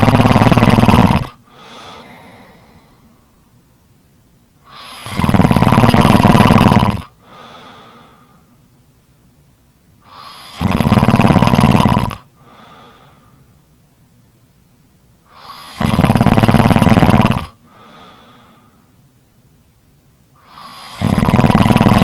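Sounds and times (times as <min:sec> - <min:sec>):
loud snoring: 0:00.0 - 0:02.4, 0:04.7 - 0:07.2, 0:10.1 - 0:12.3, 0:15.3 - 0:17.6, 0:20.4 - 0:22.0
faint breath: 0:01.4 - 0:03.6, 0:07.2 - 0:08.7, 0:12.4 - 0:13.6, 0:17.6 - 0:19.0.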